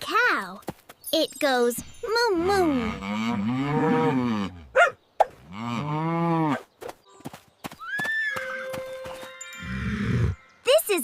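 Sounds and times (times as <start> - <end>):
cow mooing: 2.7 - 4.8.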